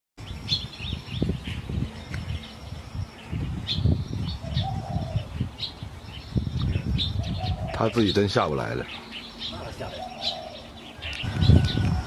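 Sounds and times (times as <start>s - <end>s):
small birds chirping: 0.2s - 12.0s.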